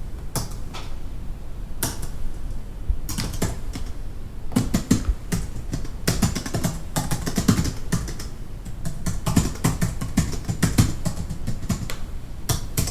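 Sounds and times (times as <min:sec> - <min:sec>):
fast typing on a keyboard: 0:03.1 - 0:04.0, 0:04.6 - 0:12.9.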